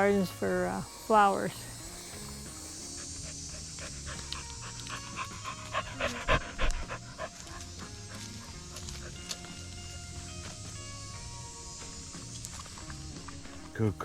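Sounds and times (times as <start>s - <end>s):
background music: 0.0s - 14.0s
dog panting: 2.8s - 10.0s.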